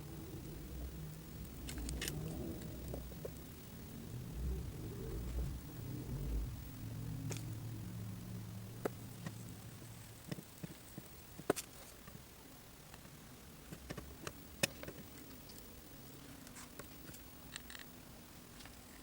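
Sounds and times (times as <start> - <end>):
low hum: 0.0 - 11.4
hand tools clicking on circuit board: 13.8 - 15.6.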